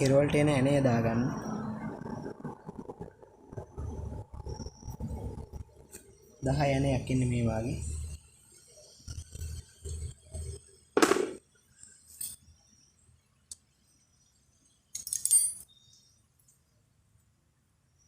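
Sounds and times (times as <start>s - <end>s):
metallic jingle of small parts: 14.9s - 15.9s.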